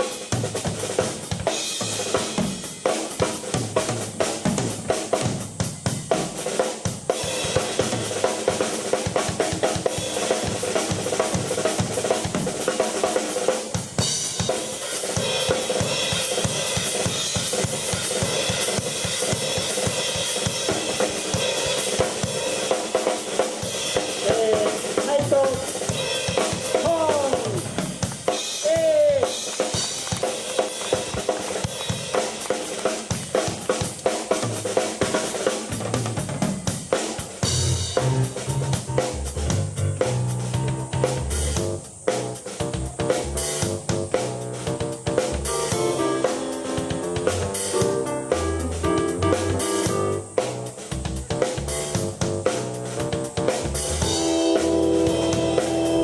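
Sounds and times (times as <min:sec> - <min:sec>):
drum kit playing: 0:00.0 - 0:56.0
keyboard chords: 0:45.0 - 0:50.4, 0:53.2 - 0:56.0
sliding notes: 0:54.0 - 0:56.0.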